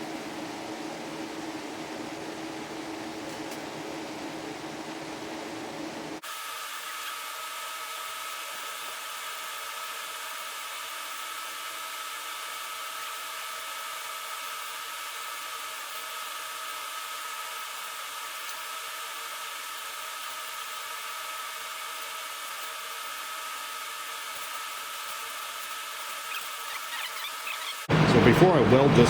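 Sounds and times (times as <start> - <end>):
motor whirring with high whine: 6.2 - 29.0.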